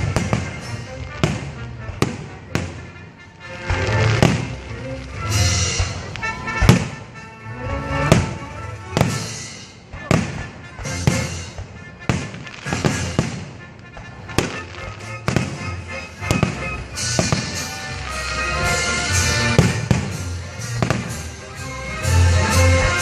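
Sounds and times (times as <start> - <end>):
fireworks bangs: 0.0 - 7.3, 8.0 - 23.0
music playing: 0.0 - 23.0.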